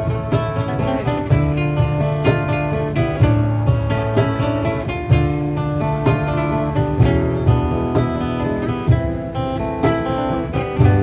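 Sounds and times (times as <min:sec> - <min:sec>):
acoustic guitar strumming chords: 0:00.0 - 0:11.0.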